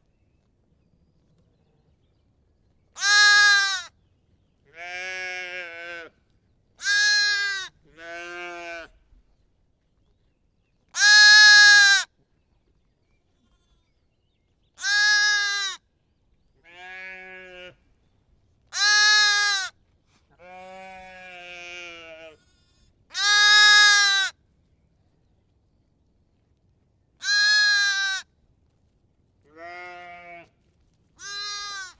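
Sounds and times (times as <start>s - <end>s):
lamb bleating: 3.0s - 3.9s, 4.8s - 6.1s, 6.8s - 8.9s, 11.0s - 12.0s, 14.8s - 15.8s, 16.7s - 17.7s, 18.8s - 19.7s, 20.4s - 24.3s, 27.2s - 28.2s, 29.5s - 30.5s, 31.2s - 31.9s.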